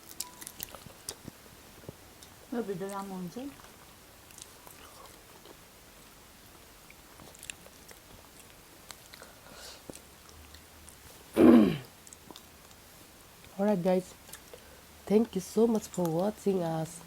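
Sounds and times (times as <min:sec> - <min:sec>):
person biting and chewing food: 0:00.0 - 0:01.4, 0:06.5 - 0:11.0.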